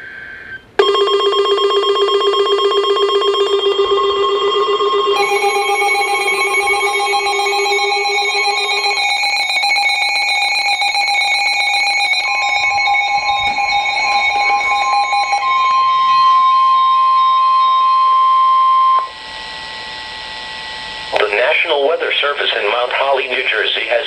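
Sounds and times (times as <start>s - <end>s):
steady high alert tone: 0.8s - 19.8s
layered electronic tones: 2.8s - 19.2s.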